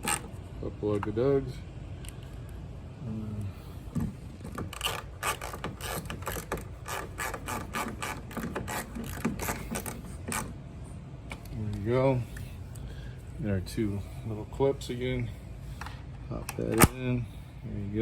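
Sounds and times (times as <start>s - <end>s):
hand ratchet clicking: 4.7s - 10.5s.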